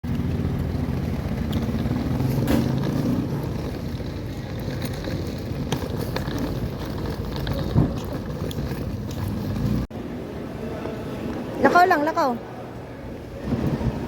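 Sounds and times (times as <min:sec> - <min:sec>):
vehicle engine hum: 0:00.0 - 0:10.2.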